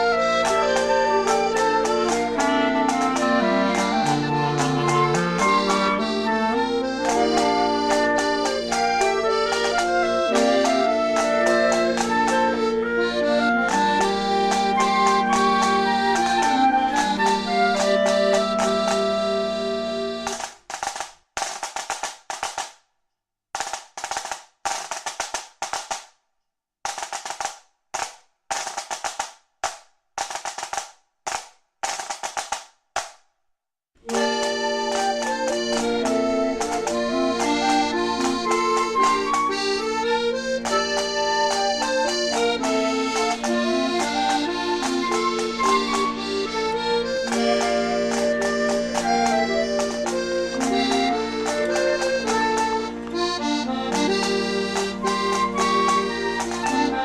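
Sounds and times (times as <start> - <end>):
instrumental music: 0.0 - 21.0, 34.0 - 57.0.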